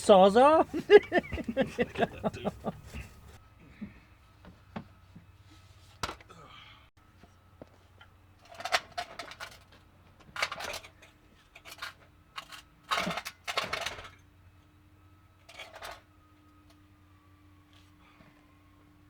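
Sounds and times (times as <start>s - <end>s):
metal tools clinking and clattering: 10.4s - 14.2s, 15.5s - 16.0s.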